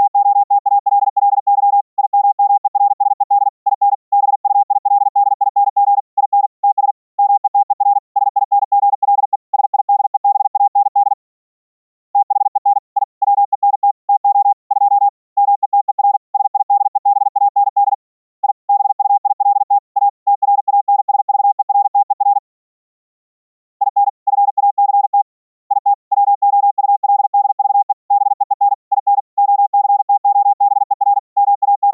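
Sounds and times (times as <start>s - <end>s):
morse code tone: 23.8s - 31.9s.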